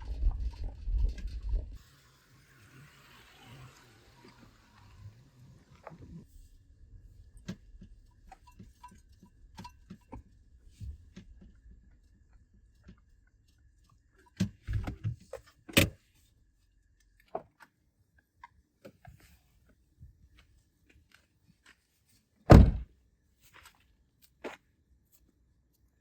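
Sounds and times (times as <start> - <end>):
heavy thump: 22.5 - 22.8.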